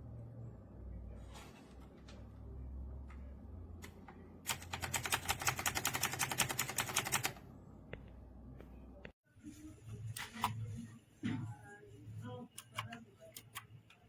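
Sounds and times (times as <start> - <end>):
clicky mechanical keyboard typing: 4.5 - 7.4.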